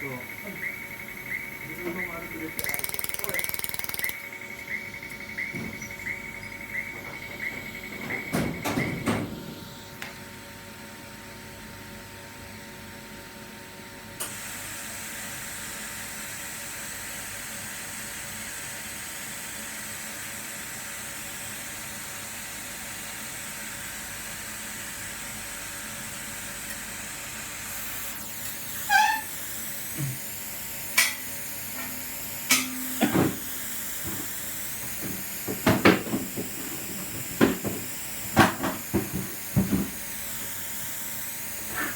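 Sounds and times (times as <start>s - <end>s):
machine hum: 0.2s - 8.4s
sharp clicks and knocks: 2.6s - 4.2s.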